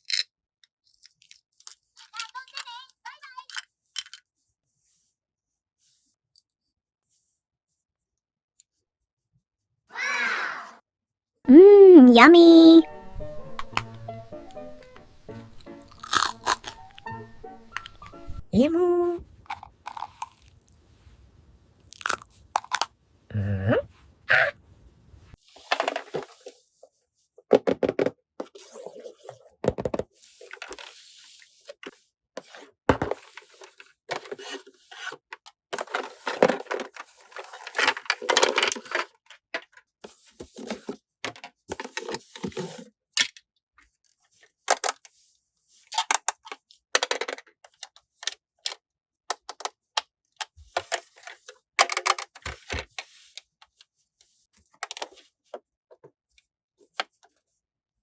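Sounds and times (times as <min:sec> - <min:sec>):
plastic toy pieces clicking: 0:01.0 - 0:02.6.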